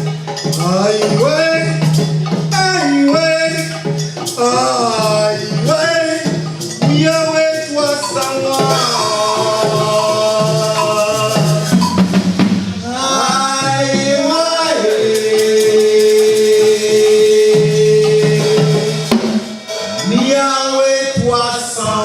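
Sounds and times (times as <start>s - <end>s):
song with shaker and drums: 0.0s - 22.0s
long held note: 19.6s - 20.4s.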